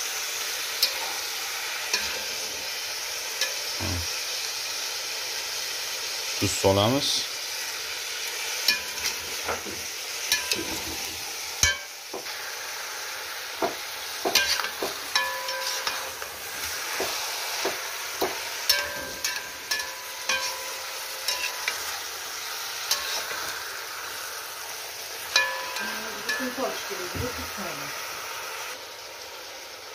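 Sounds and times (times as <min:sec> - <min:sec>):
meat and onions sizzling in oil: 0:00.0 - 0:29.9
utensil scraping and clinking pot: 0:00.8 - 0:02.7, 0:03.4 - 0:04.1, 0:08.6 - 0:12.4, 0:13.6 - 0:22.1, 0:22.8 - 0:24.2, 0:25.2 - 0:27.4.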